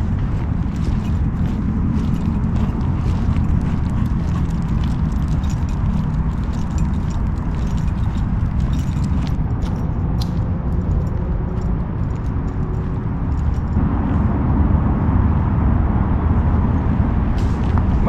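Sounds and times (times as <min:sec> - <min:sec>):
footsteps on a trail: 0:00.0 - 0:13.8
steady low rumble: 0:00.0 - 0:18.0.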